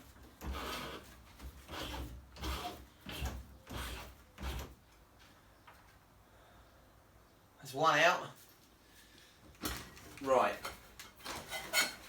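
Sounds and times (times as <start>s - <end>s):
metal scraping on metal: 11.2s - 12.0s.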